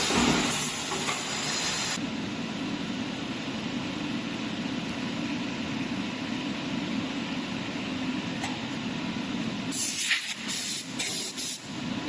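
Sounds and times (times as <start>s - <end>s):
compressed air hissing blasts: 0.0s - 2.0s, 9.7s - 11.6s.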